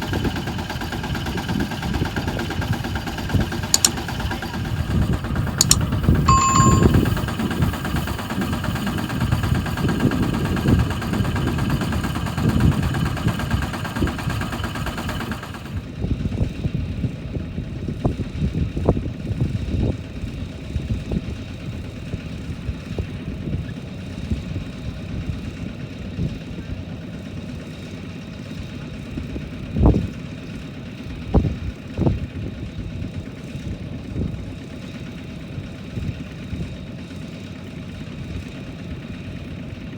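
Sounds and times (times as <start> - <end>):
tractor engine running: 0.0 - 15.9.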